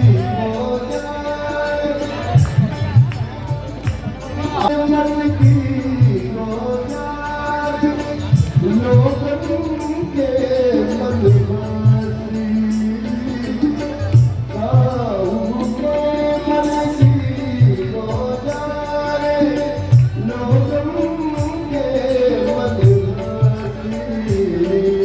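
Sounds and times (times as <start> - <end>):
low drum beat: 0.0 - 25.0
person singing: 0.0 - 25.0.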